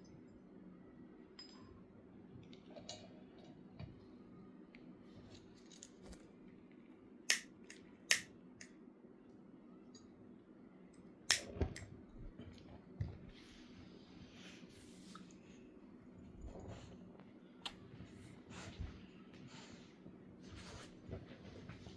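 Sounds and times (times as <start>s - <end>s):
light metallic clicks: 7.3s - 8.7s, 11.3s - 11.9s.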